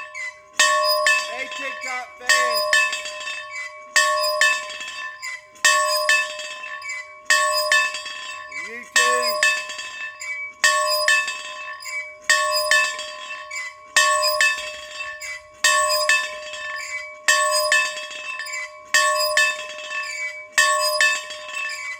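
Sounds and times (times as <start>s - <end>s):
bell ringing in double strokes: 0.0s - 13.2s.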